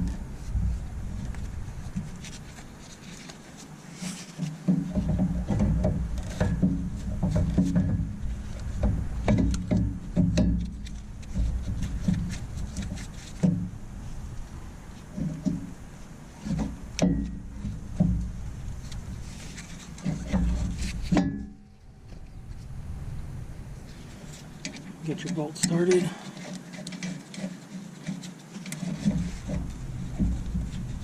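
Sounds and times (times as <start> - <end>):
low handling rumble: 0.0 - 3.0, 4.8 - 26.2, 29.0 - 31.0
metal clicks and knocks: 4.4 - 13.7, 16.4 - 19.0.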